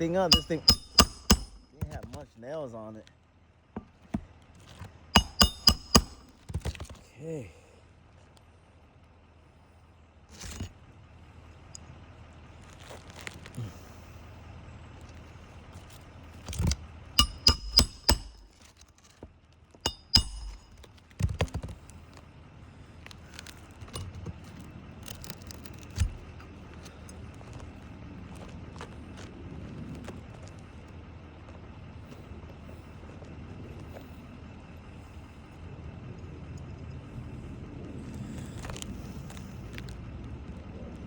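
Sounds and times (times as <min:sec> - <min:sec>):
hammer striking metal tool: 0:00.2 - 0:01.8, 0:05.2 - 0:06.3, 0:17.2 - 0:18.6, 0:19.9 - 0:20.9.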